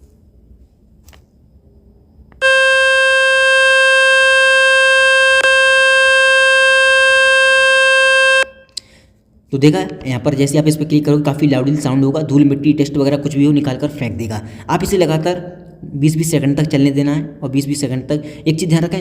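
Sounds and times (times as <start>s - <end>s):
loud buzzy beep from phone speaker: 2.4s - 8.7s.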